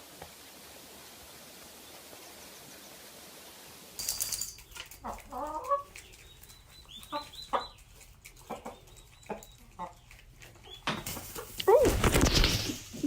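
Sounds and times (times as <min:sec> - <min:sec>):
faint steady hiss: 0:00.0 - 0:04.9
chicken clucking: 0:04.8 - 0:12.0.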